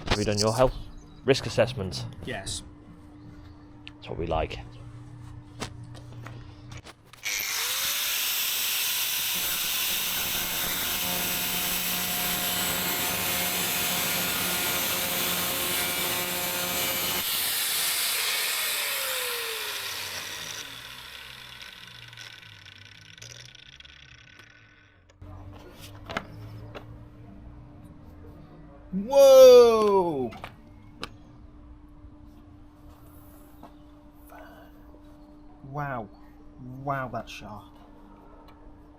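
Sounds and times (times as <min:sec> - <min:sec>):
angle grinder whining and grinding: 0:07.2 - 0:25.2.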